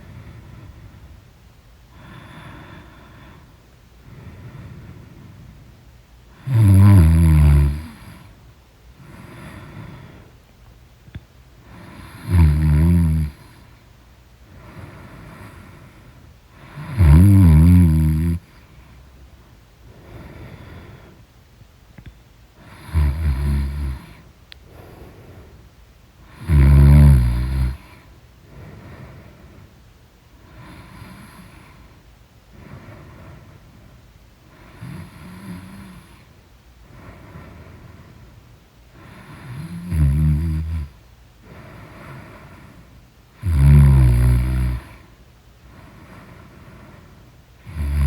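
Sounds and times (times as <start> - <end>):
soft breathing: 0.0 - 6.4, 7.8 - 10.6, 13.3 - 17.0, 18.4 - 39.6, 41.4 - 43.1, 44.8 - 48.0
person snoring: 6.3 - 8.3, 11.7 - 13.6, 16.6 - 18.5, 22.6 - 28.0, 39.0 - 41.0, 43.4 - 45.0, 47.6 - 48.0.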